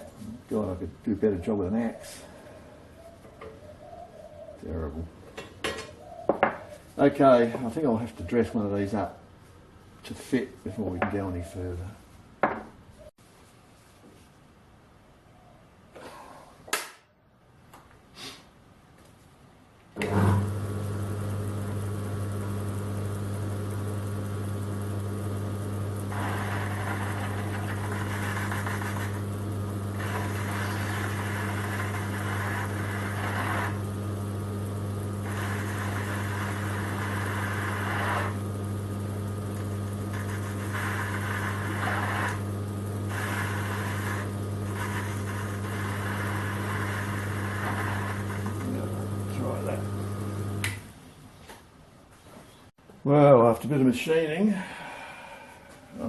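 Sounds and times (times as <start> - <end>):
lathe cutting metal: 20.0 - 50.6
lathe motor humming: 20.0 - 50.8.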